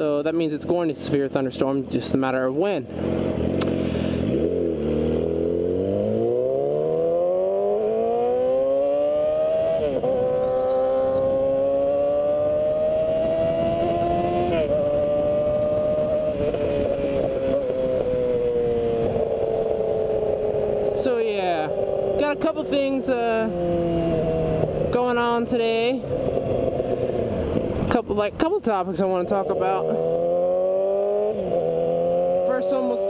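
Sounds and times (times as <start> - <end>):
motorcycle engine accelerating: 2.8 - 33.0
wind noise: 7.9 - 28.4.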